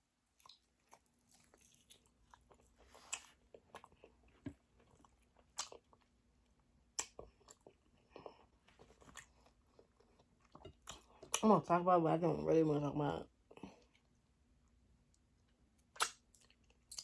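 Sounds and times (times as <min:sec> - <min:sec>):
chewing and biting: 0:00.4 - 0:06.2
wet mouth clicks and smacks: 0:15.9 - 0:17.0.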